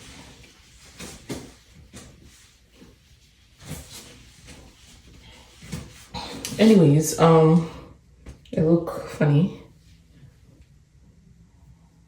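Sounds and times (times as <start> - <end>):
soft rustles: 0.0 - 8.5.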